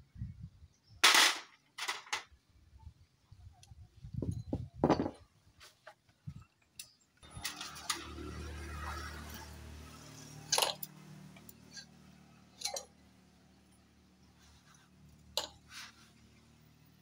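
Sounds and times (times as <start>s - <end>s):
metal tools knocking and clinking: 4.4s - 5.2s, 10.5s - 10.9s, 12.6s - 12.9s.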